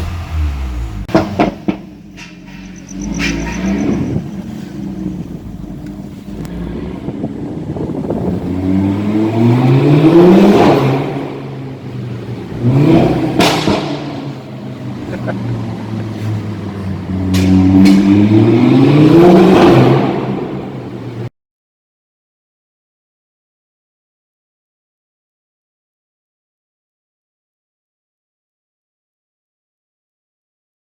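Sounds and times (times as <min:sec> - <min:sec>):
exhaust crack: 0:00.0 - 0:08.6, 0:10.5 - 0:20.8
car engine revving: 0:00.0 - 0:21.3.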